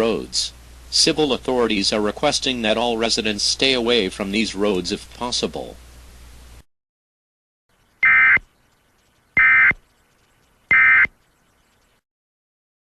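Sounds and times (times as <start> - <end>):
digital data tone bursts: 8.0 - 8.5, 9.4 - 9.8, 10.7 - 11.1.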